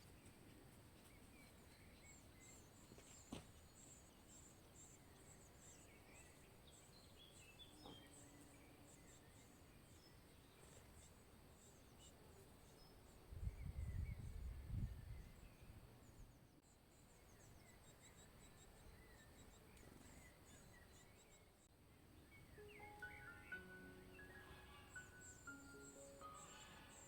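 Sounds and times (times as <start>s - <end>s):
background hiss: 0.0s - 27.0s
soft high-pitched chirps: 22.6s - 27.0s.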